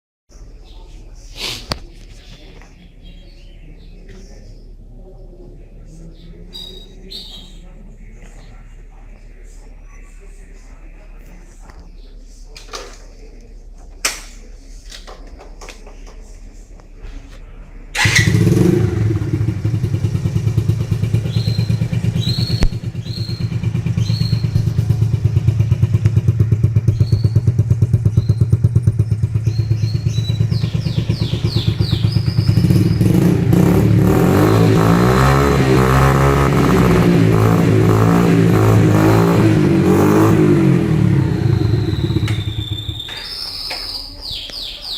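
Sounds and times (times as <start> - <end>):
scooter engine idling and revving: 18.0 - 43.4.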